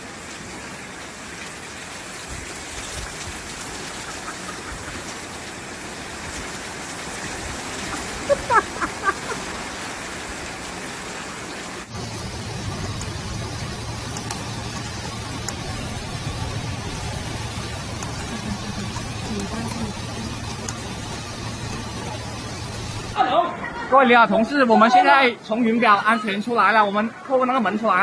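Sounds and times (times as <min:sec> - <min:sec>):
flowing floodwater: 0:00.0 - 0:28.0
heavy rain: 0:00.0 - 0:28.0
steady low hum: 0:11.9 - 0:23.2.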